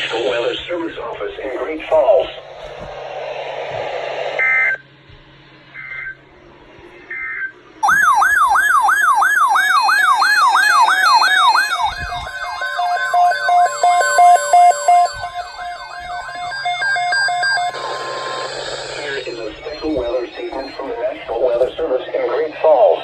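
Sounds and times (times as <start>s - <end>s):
data tone bursts: 7.8s - 21.8s
electronic siren alert tone: 7.8s - 21.8s.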